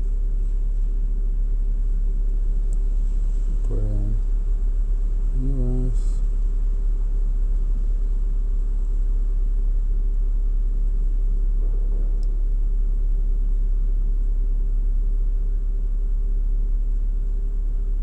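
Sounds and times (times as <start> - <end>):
vehicle idling: 0.0 - 14.7
faint tick: 12.2 - 12.4.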